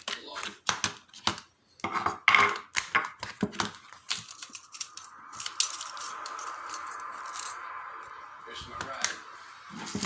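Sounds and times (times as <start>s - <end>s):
steady hum: 4.2s - 10.0s.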